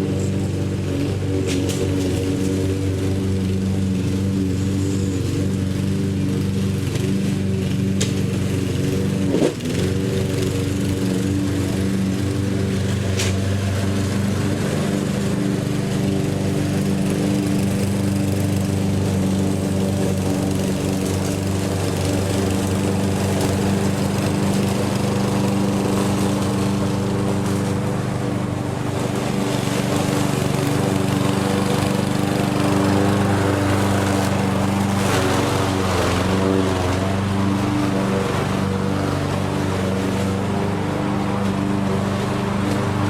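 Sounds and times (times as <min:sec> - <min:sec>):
lawn mower engine running: 0:00.0 - 0:43.0.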